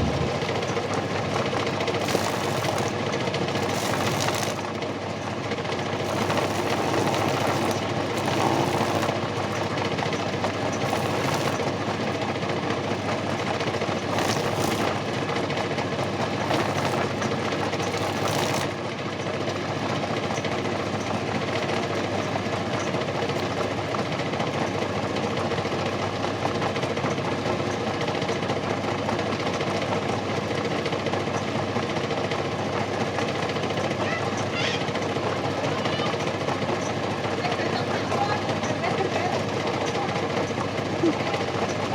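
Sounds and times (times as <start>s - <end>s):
washing-machine motor running: 0.0s - 27.6s.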